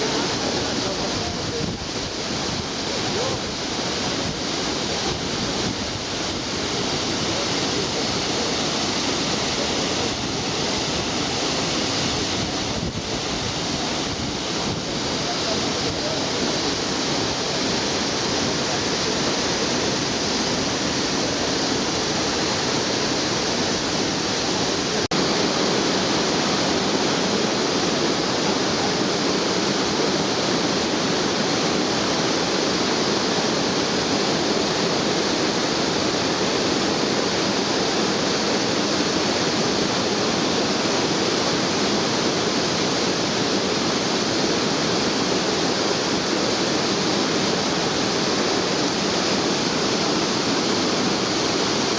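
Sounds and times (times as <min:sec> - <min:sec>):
waterfall rushing: 0:00.0 - 0:51.9.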